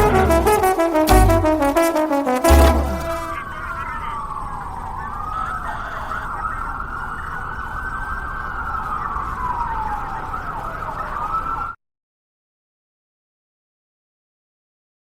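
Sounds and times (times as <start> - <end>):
siren wailing: 0.0 - 11.8.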